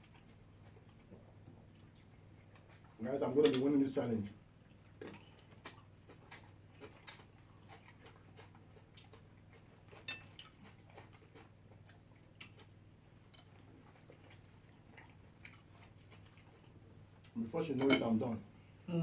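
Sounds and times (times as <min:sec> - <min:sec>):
chewing: 0:00.0 - 0:17.4
low steady hum: 0:00.0 - 0:19.0
cutlery clinking on plates: 0:17.8 - 0:18.2.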